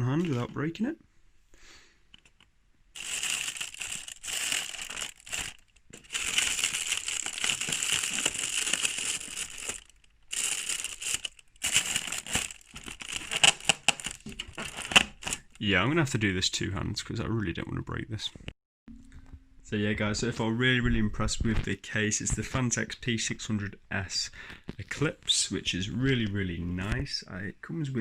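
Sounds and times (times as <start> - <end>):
packaging rustling and crinkling: 3.0 - 15.6.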